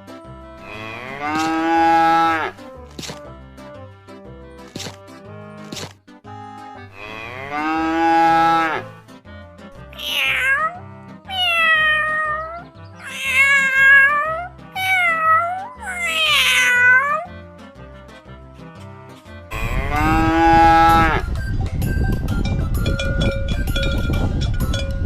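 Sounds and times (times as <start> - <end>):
cat meowing: 9.9 - 17.3
background music with steady beat: 17.3 - 25.0.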